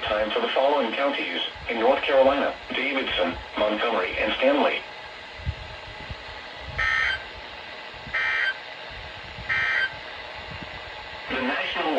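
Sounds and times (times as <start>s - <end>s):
radio hiss: 0.0s - 4.9s, 11.2s - 11.9s
digital data burst squawks: 8.2s - 8.6s, 9.5s - 9.9s.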